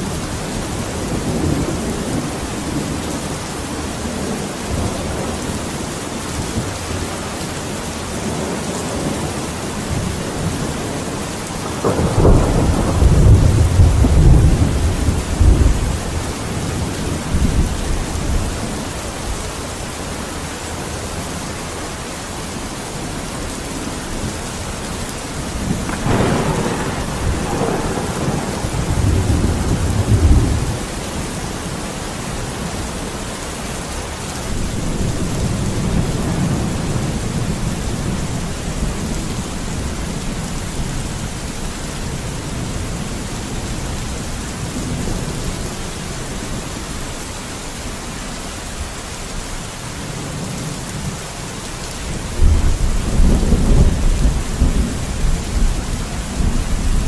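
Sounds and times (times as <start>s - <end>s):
steady rain: 0.0s - 57.0s
thunder rumbling: 8.2s - 18.8s, 25.3s - 33.0s.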